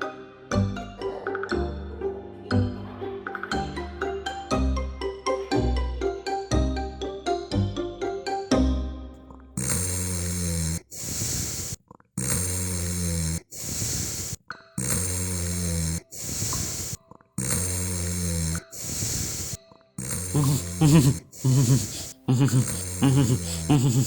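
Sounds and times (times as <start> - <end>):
cartoon snoring: 9.6 - 24.0.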